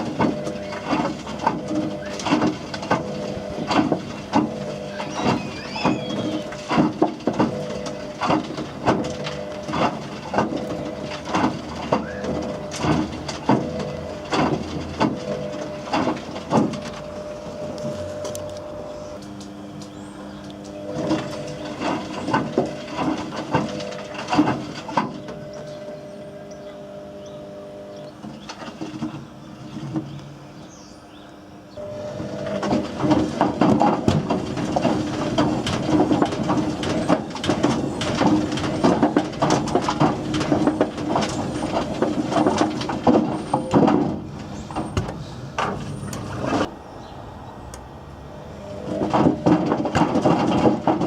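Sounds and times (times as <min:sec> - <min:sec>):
objects clattering in washing machine: 0:00.0 - 0:18.3, 0:20.7 - 0:25.8, 0:32.0 - 0:46.7, 0:48.7 - 0:51.0
washing machine motor hum: 0:00.0 - 0:51.0.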